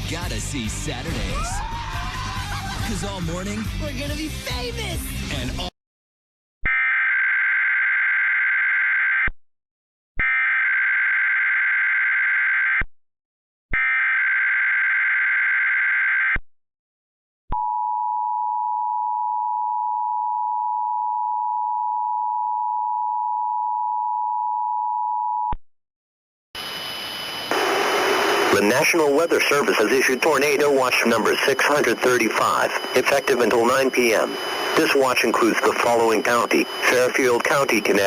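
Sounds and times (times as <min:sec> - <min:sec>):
warbling digital data tones: 0:26.6 - 0:38.0
burst of noise: 0:27.4 - 0:30.2
two-tone attention signal: 0:28.7 - 0:38.0.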